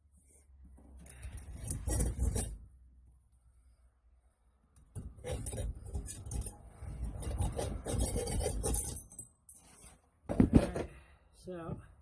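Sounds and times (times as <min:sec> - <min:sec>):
hand scraping and rubbing: 0:00.0 - 0:02.7.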